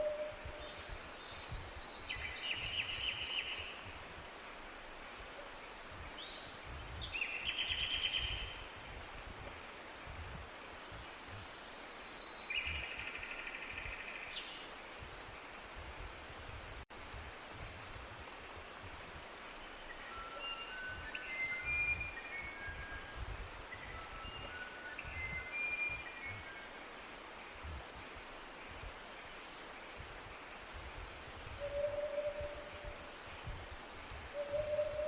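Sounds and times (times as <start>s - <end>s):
bird trilling song: 34.4s - 35.0s.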